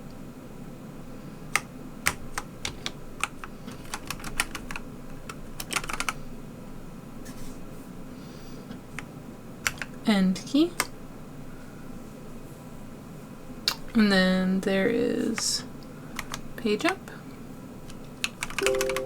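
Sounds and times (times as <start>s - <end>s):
mechanical keyboard keys clacking: 1.6s - 6.2s, 9.0s - 10.0s, 16.2s - 17.0s, 17.9s - 19.0s.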